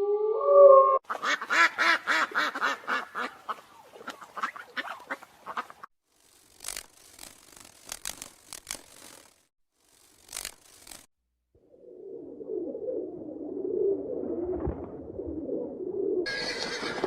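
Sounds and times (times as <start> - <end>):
duck quacking rapidly: 1.1 - 5.9
scratchy clicks: 6.2 - 11.1.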